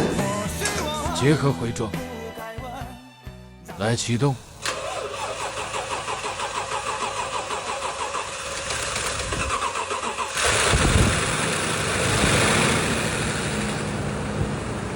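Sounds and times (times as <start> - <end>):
car engine idling: 4.4 - 14.9
starter cranking engine: 4.5 - 13.0.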